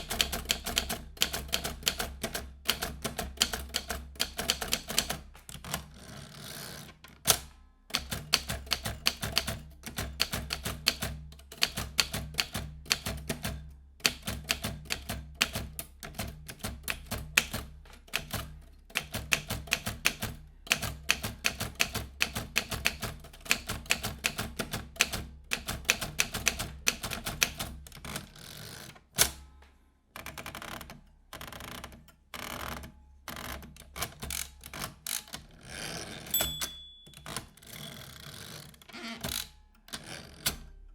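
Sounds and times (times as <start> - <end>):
typewriter keys striking: 0.0 - 5.9, 7.2 - 28.1.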